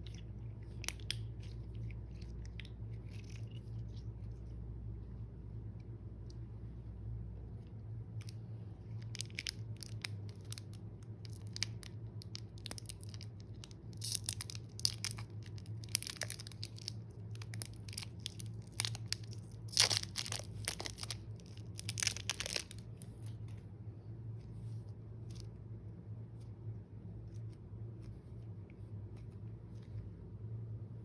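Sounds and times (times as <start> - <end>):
steady low hum: 0.0 - 31.0
slime crackling and popping: 8.2 - 23.2.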